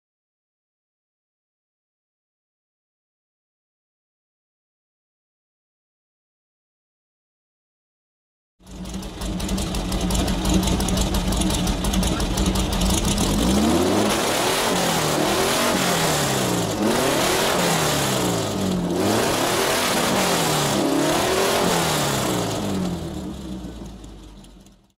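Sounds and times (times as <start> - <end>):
car engine revving: 8.7 - 24.8.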